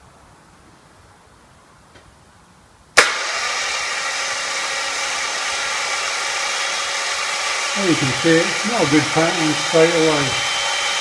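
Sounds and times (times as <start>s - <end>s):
starter motor whirring: 3.0s - 11.0s.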